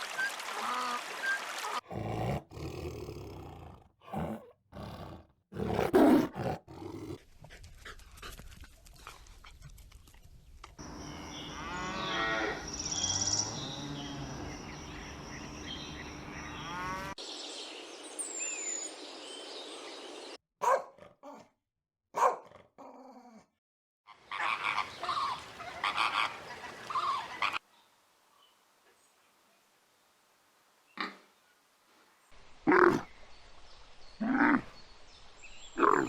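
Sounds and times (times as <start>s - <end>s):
farm animal calls: 10.8s - 17.2s, 24.1s - 27.6s.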